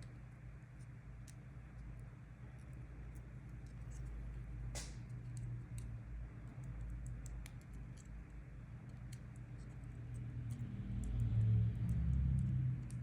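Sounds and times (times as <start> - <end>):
low steady hum: 0.0 - 13.0
small clicks of parts and tools: 4.8 - 13.0.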